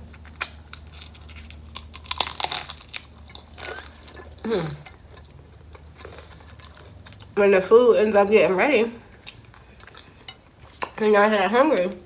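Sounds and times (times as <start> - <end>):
taco crunching while chewed: 0.0 - 7.4, 9.0 - 11.0.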